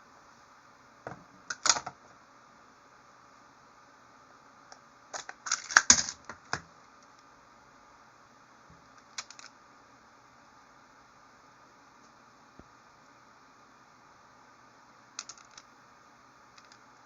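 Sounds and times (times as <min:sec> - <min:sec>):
plastic tiles clicking together: 0:15.2 - 0:15.6.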